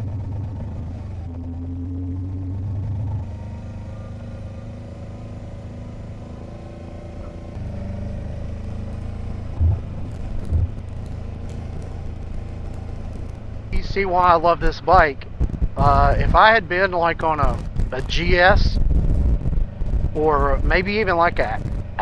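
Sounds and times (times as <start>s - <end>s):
motorcycle engine running: 0.0s - 22.0s
dull thumps: 8.5s - 14.5s, 15.2s - 16.6s.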